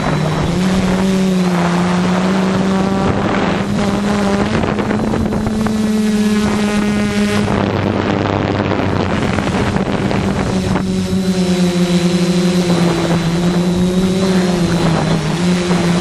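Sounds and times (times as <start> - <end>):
drone motors buzzing: 0.0 - 16.0
wind noise on microphone: 0.0 - 16.0.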